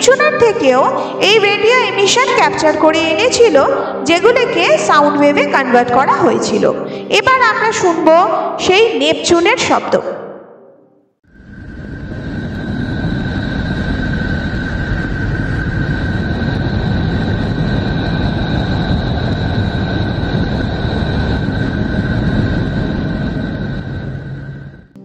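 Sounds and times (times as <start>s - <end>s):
dense rumbling rush: 11.3s - 25.0s.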